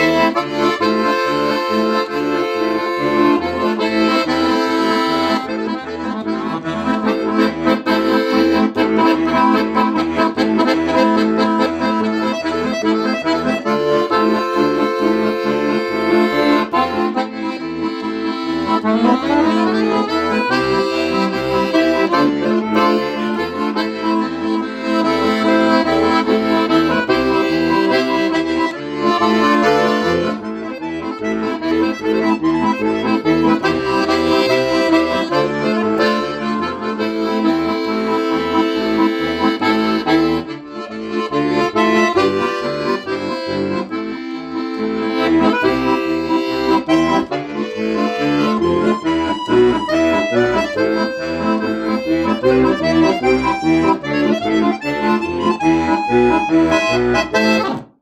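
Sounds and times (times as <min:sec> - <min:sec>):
button accordion melody: 0:00.0 - 0:58.0.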